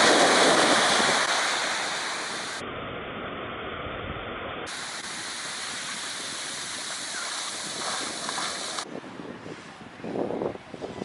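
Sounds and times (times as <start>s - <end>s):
ocean surf washing in: 0.0s - 2.8s, 4.7s - 8.8s.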